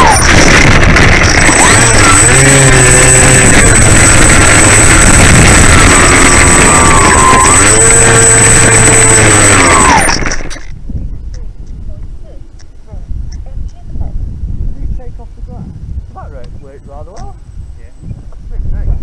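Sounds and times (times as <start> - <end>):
thick rush of noise: 0.0 - 10.4
thin steady high whine: 0.0 - 10.8
model plane motor and propeller: 0.0 - 12.6.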